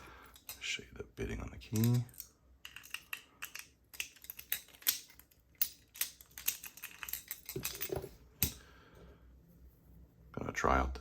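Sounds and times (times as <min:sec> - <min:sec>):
padlock and key clicking: 0:01.7 - 0:08.6.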